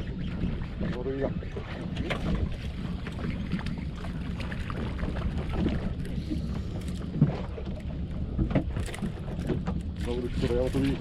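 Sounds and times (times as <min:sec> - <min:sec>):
boat engine humming: 0:00.0 - 0:11.0.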